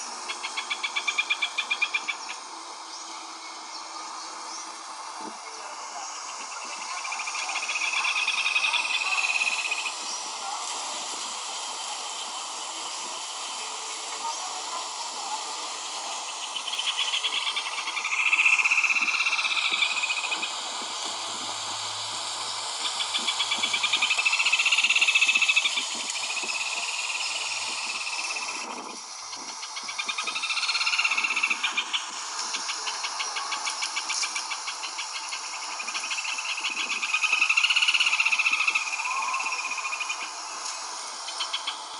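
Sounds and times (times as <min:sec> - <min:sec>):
background hiss: 0:00.0 - 0:41.9
bird trilling: 0:16.4 - 0:20.6, 0:29.3 - 0:40.3.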